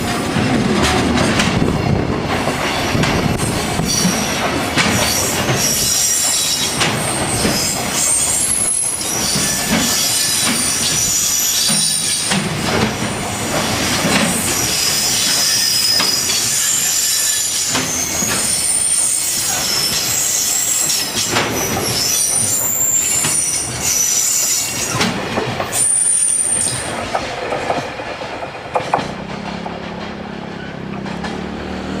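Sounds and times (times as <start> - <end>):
train wheels squealing: 2.7 - 27.1
wheels clicking over rail joints: 24.9 - 31.6.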